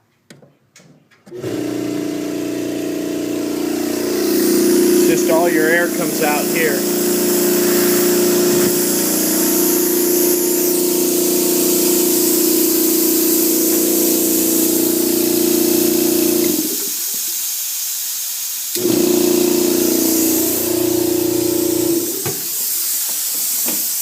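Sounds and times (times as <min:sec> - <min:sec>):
air compressor motor humming: 0:01.3 - 0:17.3, 0:18.7 - 0:24.0
air hissing from outlet: 0:03.1 - 0:24.0.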